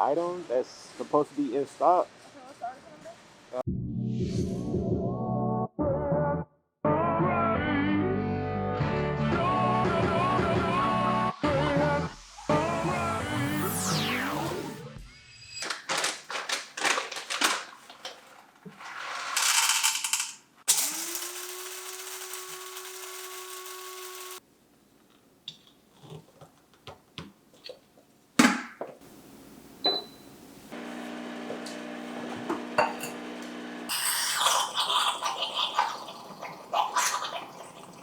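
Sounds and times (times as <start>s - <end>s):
coffee grinder running: 19.1s - 24.4s, 30.8s - 34.4s
espresso machine pump humming: 20.8s - 24.4s, 30.8s - 34.4s
cups and machine parts clinking: 32.5s - 33.2s.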